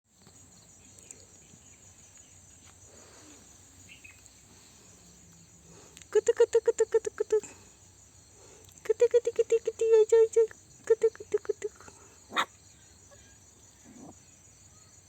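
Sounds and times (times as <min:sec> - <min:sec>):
insects chirring: 0:00.1 - 0:15.0
rapid short pitched calls: 0:11.6 - 0:12.6.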